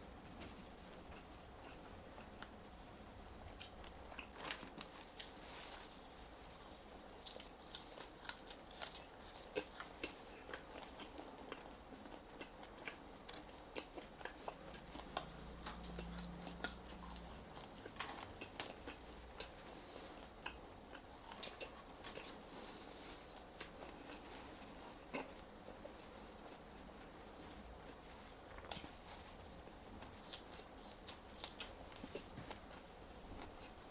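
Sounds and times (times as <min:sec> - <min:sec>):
person chewing fries: 0:03.5 - 0:33.9.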